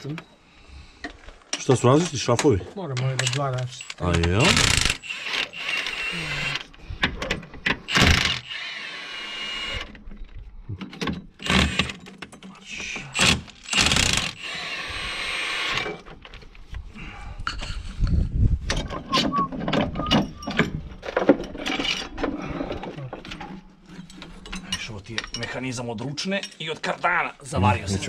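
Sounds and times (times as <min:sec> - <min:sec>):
power tool bursts: 0:03.8 - 0:06.7, 0:07.9 - 0:09.9, 0:11.4 - 0:12.0, 0:13.1 - 0:16.0.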